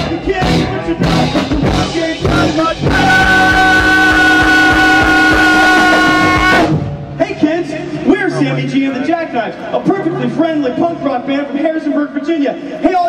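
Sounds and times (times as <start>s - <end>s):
punk rock guitar: 0.0s - 7.2s
steady drum beat: 0.0s - 7.7s.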